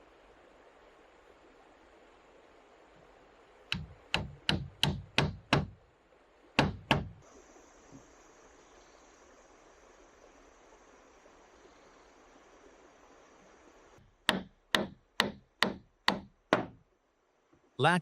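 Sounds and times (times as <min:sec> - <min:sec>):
hammer blows on timber: 0:03.7 - 0:05.7.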